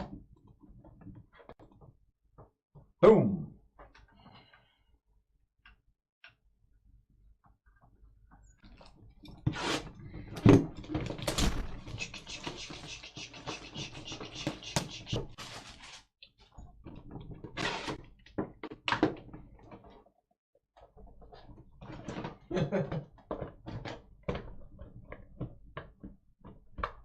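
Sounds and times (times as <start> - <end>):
packaging crinkling and rustling: 15.3 - 16.1.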